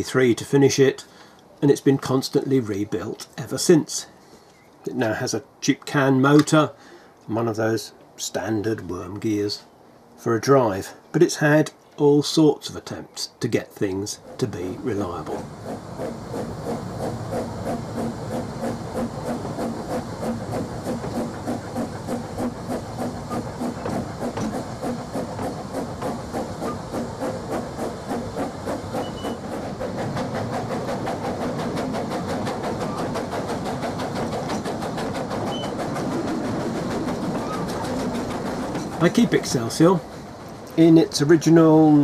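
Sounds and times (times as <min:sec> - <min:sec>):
model steam locomotive hissing: 0:14.0 - 0:42.0.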